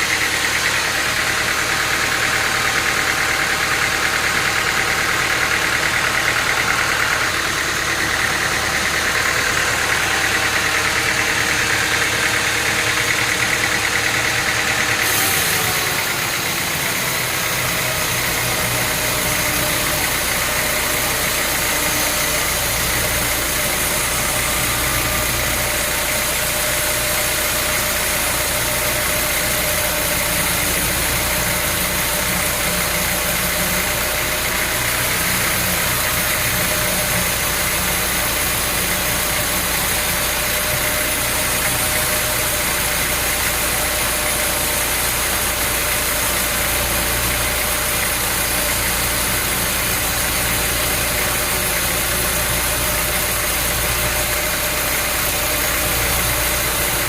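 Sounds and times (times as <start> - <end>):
engine running steadily: 0.0 - 57.0.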